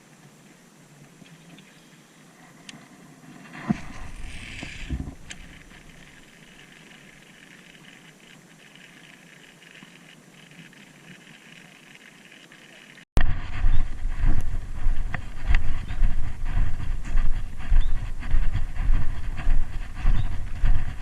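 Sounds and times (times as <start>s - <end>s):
faint steady hiss: 0.0s - 13.0s
low bumps: 3.3s - 6.2s, 13.2s - 21.0s.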